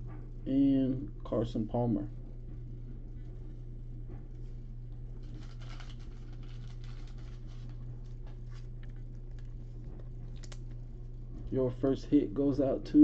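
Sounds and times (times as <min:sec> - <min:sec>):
steady low hum: 0:00.0 - 0:13.0
trading cards rustling and clicking: 0:05.2 - 0:10.8.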